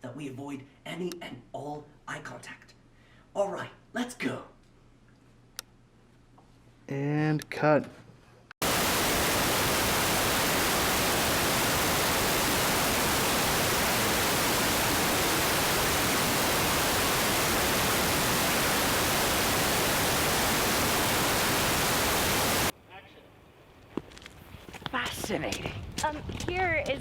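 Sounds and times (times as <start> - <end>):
loud static hiss: 8.6 - 22.7.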